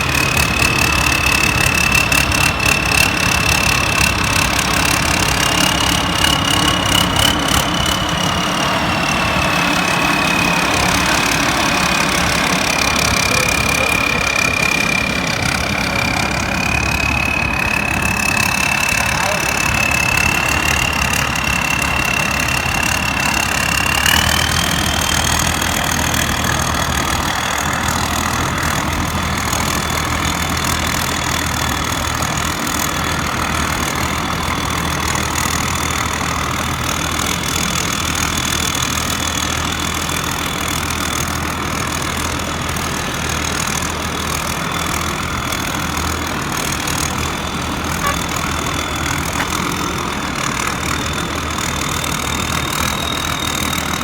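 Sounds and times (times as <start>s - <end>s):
combine harvester engine running: 0.0s - 54.0s
high machine whine: 0.0s - 54.0s.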